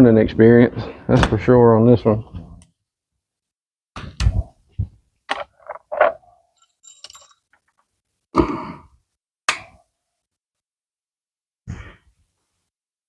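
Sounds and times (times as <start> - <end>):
metallic clink: 6.5 - 7.6.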